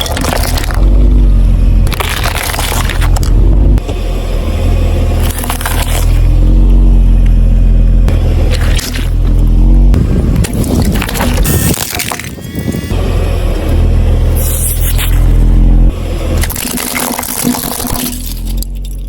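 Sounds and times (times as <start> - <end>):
tyres crushing objects: 0.0 - 3.8, 5.2 - 6.5, 8.1 - 13.0, 14.3 - 19.0
car engine running: 0.0 - 19.0.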